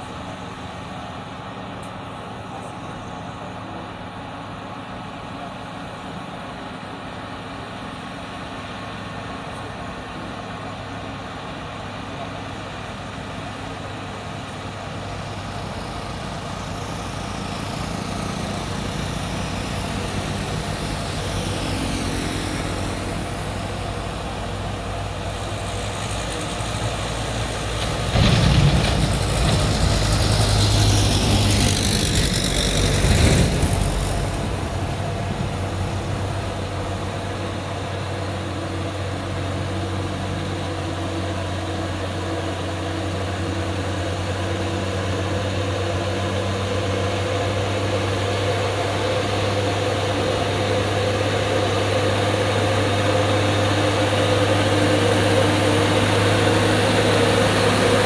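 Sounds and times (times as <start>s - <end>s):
heavy vehicle engines humming: 0.0s - 58.0s
vehicle passing close: 16.5s - 58.0s.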